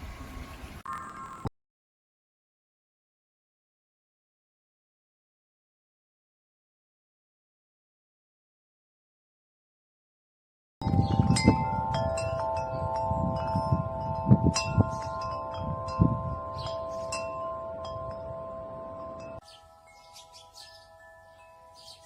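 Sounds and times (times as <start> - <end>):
wind chime ringing: 10.8 - 22.0.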